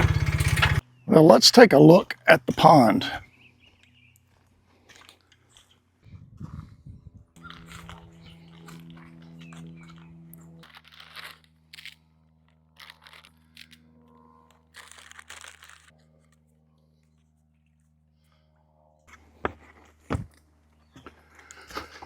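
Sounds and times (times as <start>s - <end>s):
low engine hum: 0.0s - 1.0s, 6.0s - 14.8s
crunching sounds: 7.4s - 17.3s.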